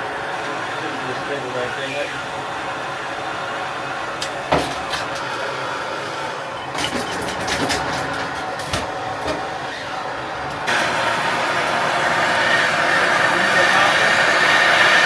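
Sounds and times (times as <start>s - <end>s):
mechanical hum: 0.0s - 15.0s
knocks and clatter of tools on pipes: 4.2s - 5.3s, 6.8s - 9.5s.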